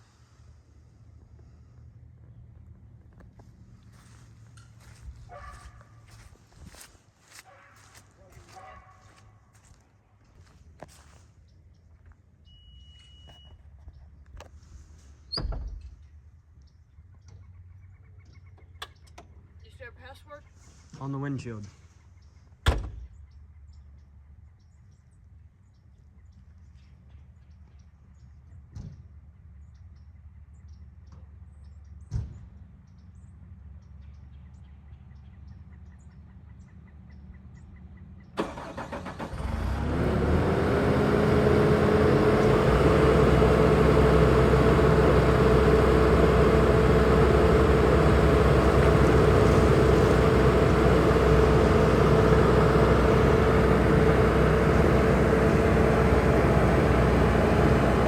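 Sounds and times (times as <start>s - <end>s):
diesel engine cranking and idling: 0.0s - 11.2s, 38.3s - 58.0s
engine whine: 38.4s - 58.0s.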